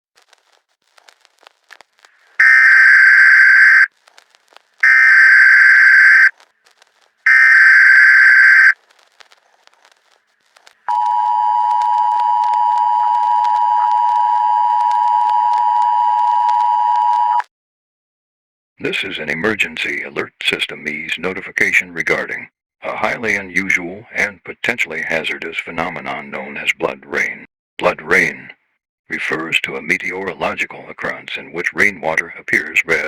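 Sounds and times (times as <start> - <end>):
screeching data bursts: 2.4 - 3.9, 4.8 - 6.4, 7.2 - 8.8
two-tone attention signal: 10.9 - 17.4.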